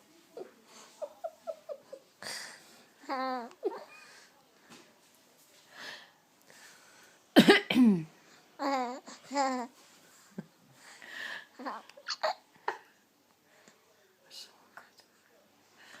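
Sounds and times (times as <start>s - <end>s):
person coughing: 7.4s - 8.1s.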